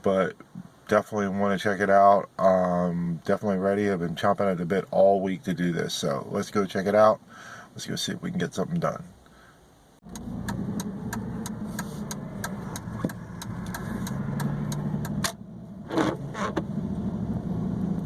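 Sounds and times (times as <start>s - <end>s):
road noise: 9.1s - 18.0s
car engine running: 10.0s - 18.0s.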